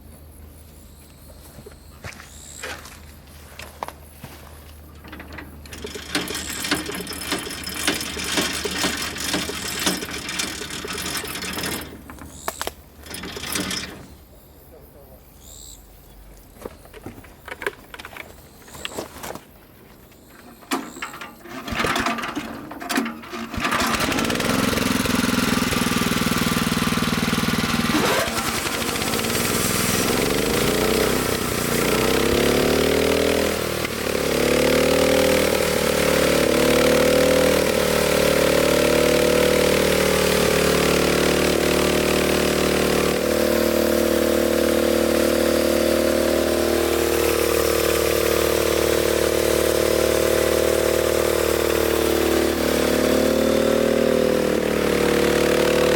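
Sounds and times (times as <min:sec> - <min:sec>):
engine knocks: 0:04.8 - 0:14.1, 0:20.4 - 0:53.6
small engine starting and revving: 0:04.8 - 0:14.2, 0:20.2 - 0:55.9.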